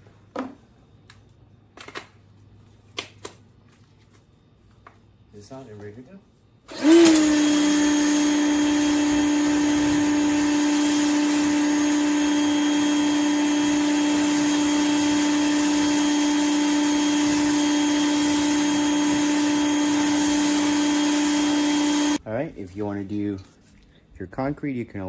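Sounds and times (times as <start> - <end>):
pressure washer motor hum: 6.7 - 22.2.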